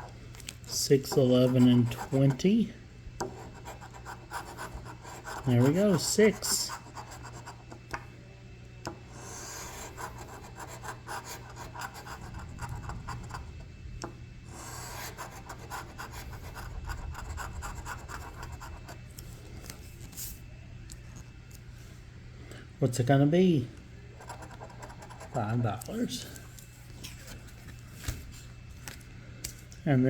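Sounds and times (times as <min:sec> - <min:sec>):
lottery ticket being scratched: 0:00.7 - 0:02.5, 0:03.2 - 0:07.8, 0:09.1 - 0:13.5, 0:24.2 - 0:26.2.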